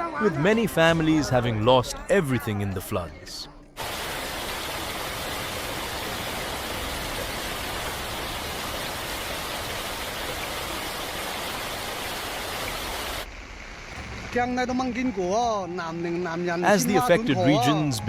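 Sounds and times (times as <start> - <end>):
rushing water: 3.8 - 13.3.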